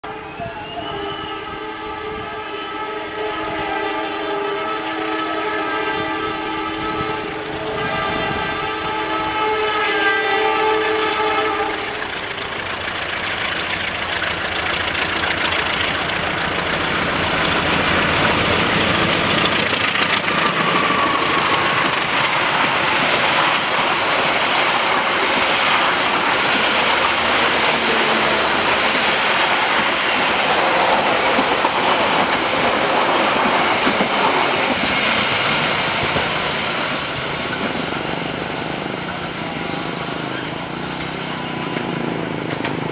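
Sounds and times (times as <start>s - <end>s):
locomotive horn chord: 0.0s - 13.8s, 14.6s - 32.7s
train wheels clattering: 4.9s - 42.9s.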